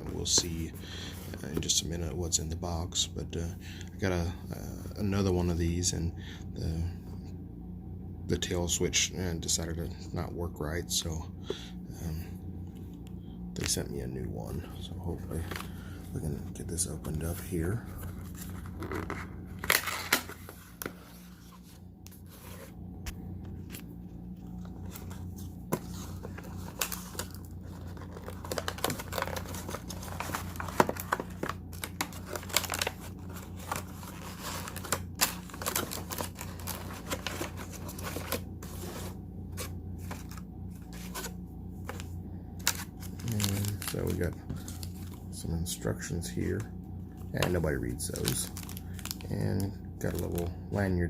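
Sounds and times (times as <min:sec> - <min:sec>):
steady low hum: 0:00.0 - 0:51.0
packaging tearing and crinkling: 0:18.3 - 0:20.6, 0:25.9 - 0:39.2, 0:42.6 - 0:45.2, 0:48.1 - 0:50.5.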